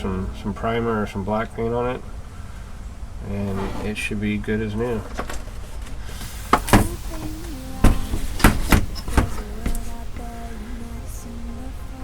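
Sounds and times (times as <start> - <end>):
sharp knocks and clicks: 6.5 - 10.3
quiet music with held notes: 6.8 - 12.0.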